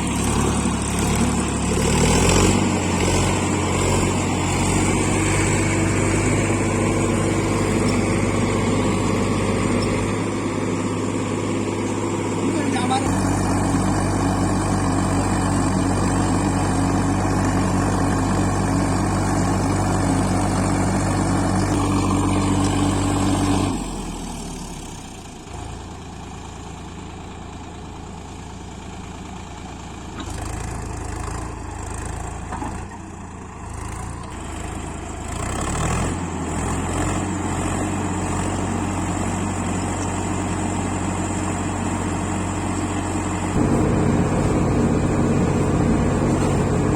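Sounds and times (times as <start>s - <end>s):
heavy vehicle engine humming: 0.0s - 24.2s, 37.4s - 46.9s.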